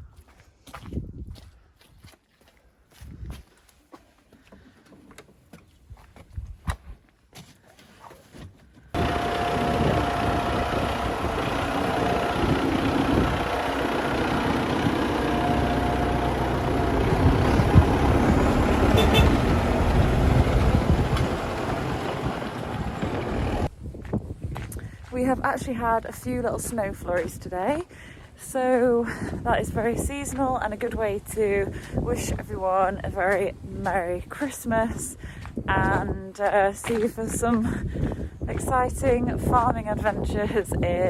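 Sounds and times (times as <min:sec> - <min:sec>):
tractor engines running: 0:09.0 - 0:23.7.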